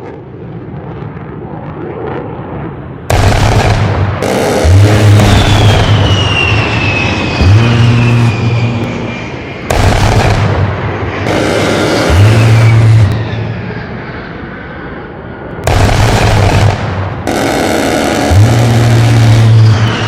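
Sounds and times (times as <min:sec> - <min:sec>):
high jet whine: 0:00.0 - 0:20.0
rotary cannon buzzing roar: 0:00.0 - 0:20.0
heavy boom: 0:03.0 - 0:13.7, 0:15.6 - 0:20.0.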